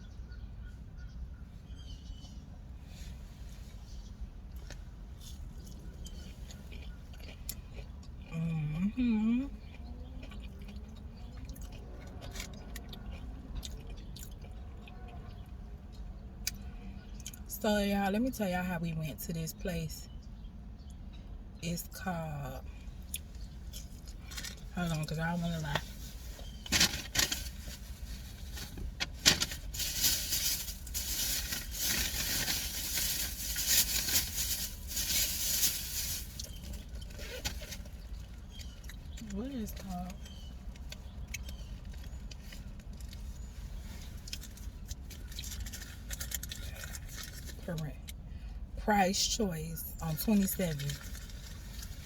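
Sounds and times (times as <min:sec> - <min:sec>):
steady low rumble: 0:00.0 - 0:52.0
close-up chewing: 0:04.5 - 0:08.8, 0:09.5 - 0:17.4, 0:40.0 - 0:48.3
handling rustling and crackling: 0:23.2 - 0:47.7, 0:50.6 - 0:52.0.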